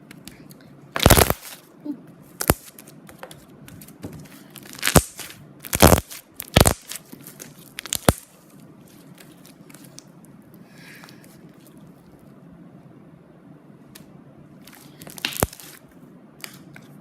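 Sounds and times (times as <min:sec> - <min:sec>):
slime bubbles popping: 0:01.0 - 0:01.5, 0:04.6 - 0:07.0, 0:07.8 - 0:08.3.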